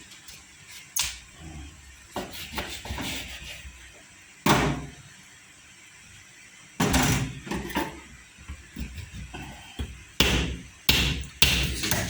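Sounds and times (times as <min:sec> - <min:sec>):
knife chopping on cutting board: 0:10.2 - 0:12.0.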